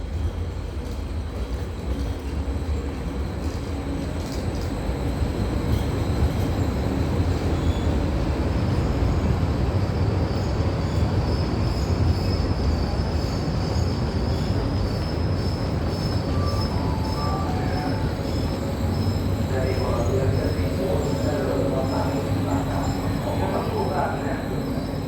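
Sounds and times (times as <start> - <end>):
train rolling rumble: 0.0 - 25.0
high wheel squeal: 10.3 - 25.0.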